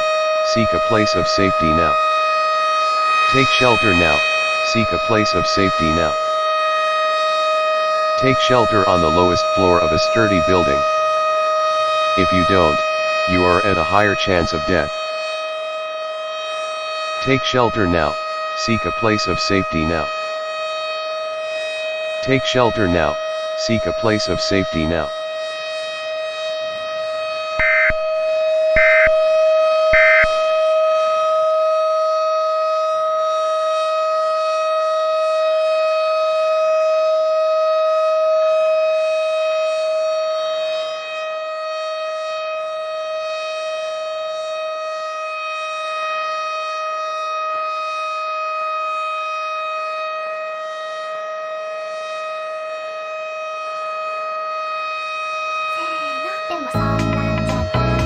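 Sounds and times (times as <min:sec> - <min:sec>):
civil defense siren steady tone: 0:00.0 - 0:58.0
short high-pitched beeps: 0:02.9 - 0:06.2, 0:30.0 - 0:30.4.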